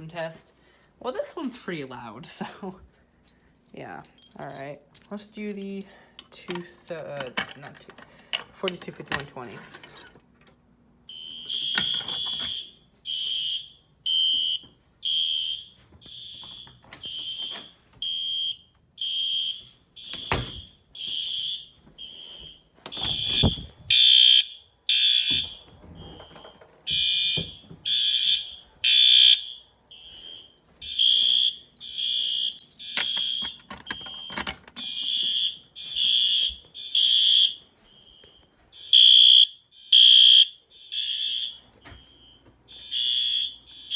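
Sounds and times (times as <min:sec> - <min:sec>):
fire alarm horn pulsing: 0:11.0 - 0:43.9.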